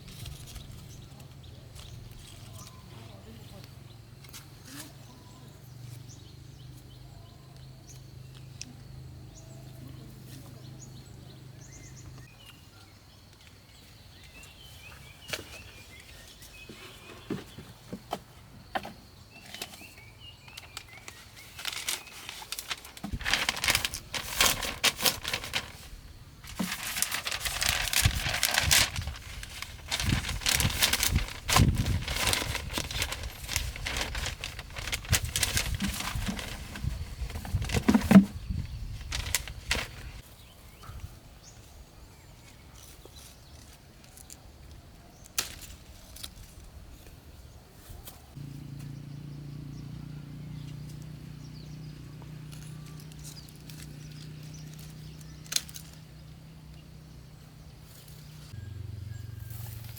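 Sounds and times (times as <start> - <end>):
rustling and crinkling: 0.0 - 3.2, 14.1 - 40.5, 52.5 - 56.2.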